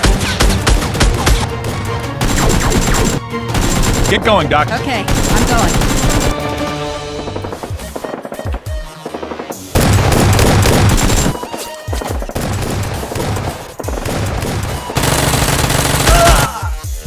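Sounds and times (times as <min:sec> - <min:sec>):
background music: 0:00.0 - 0:17.0
automatic gunfire bursts: 0:05.1 - 0:06.4, 0:12.0 - 0:16.1.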